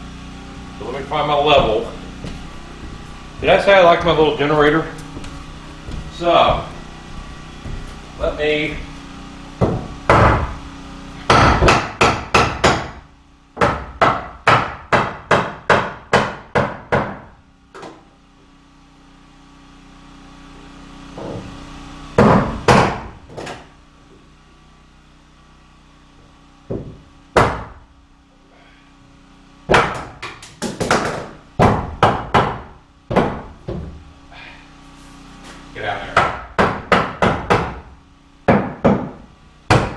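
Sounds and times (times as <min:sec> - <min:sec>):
hammer striking wood: 0:00.6 - 0:18.0, 0:22.2 - 0:23.7, 0:26.7 - 0:27.8, 0:29.7 - 0:34.1, 0:36.1 - 0:39.9.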